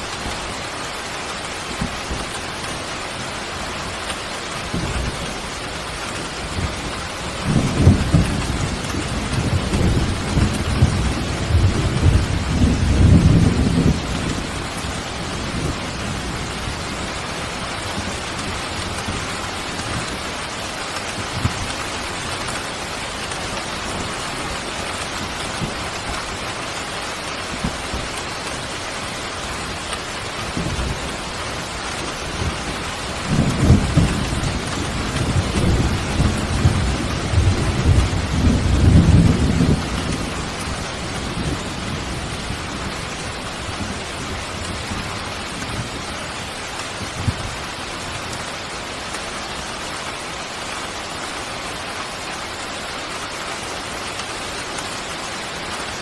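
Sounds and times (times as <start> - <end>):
steady rain: 0.0 - 56.0
rolling thunder: 6.4 - 17.2, 32.3 - 46.0.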